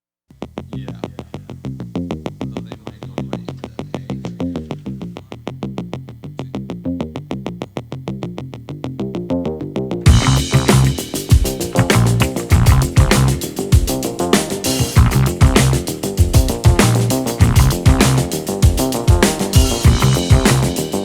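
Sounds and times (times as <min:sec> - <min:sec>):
electronic beat: 0:10.1 - 0:21.0
pulsed synthesizer notes: 0:10.1 - 0:21.0.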